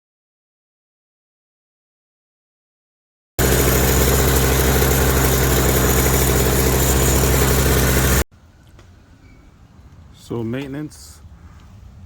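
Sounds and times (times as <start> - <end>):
snowblower engine running: 3.4 - 8.3.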